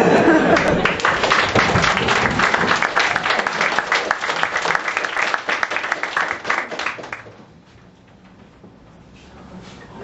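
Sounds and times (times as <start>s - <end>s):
audience applauding: 0.3s - 7.4s.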